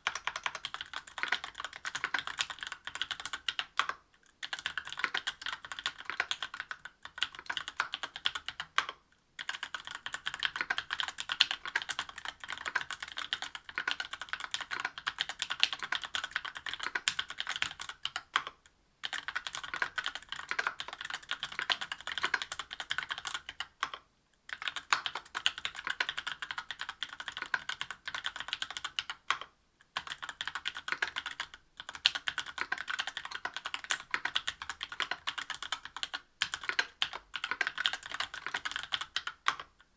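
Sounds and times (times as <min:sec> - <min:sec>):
mechanical keyboard typing: 0:00.0 - 0:39.7.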